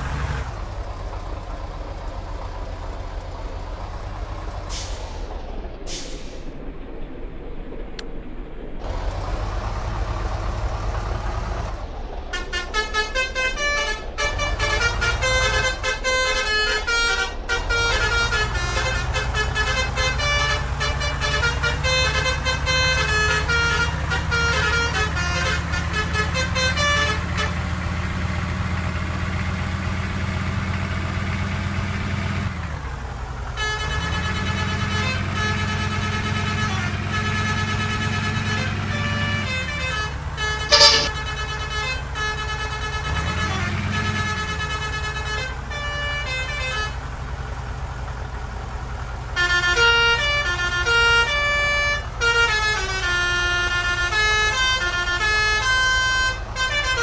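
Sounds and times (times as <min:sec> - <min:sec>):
bus engine running: 0:00.0 - 0:57.0
musical bus horn tune: 0:12.3 - 0:30.8, 0:33.5 - 0:47.3, 0:49.3 - 0:57.0
held horn chord: 0:38.5 - 0:42.0.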